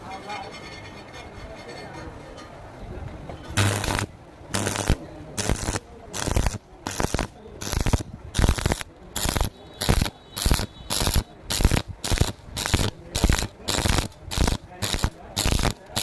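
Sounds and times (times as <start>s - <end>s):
welding arc crackling: 3.6s - 16.0s.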